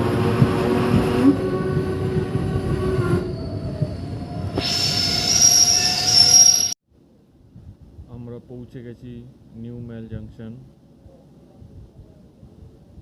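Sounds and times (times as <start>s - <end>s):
train rail noise: 0.0s - 6.8s
high brake squeal: 2.6s - 6.8s.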